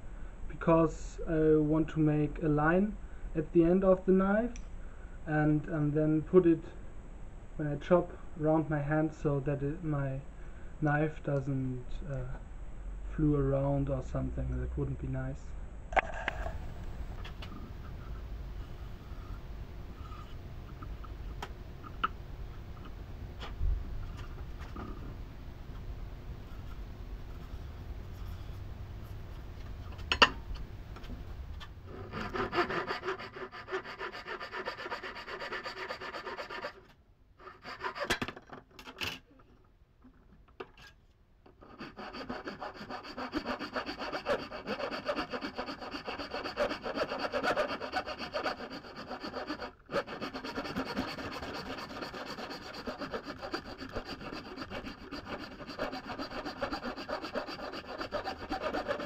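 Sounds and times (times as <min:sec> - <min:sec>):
hand saw cutting wood: 0:31.9 - 0:38.2, 0:41.6 - 0:59.0.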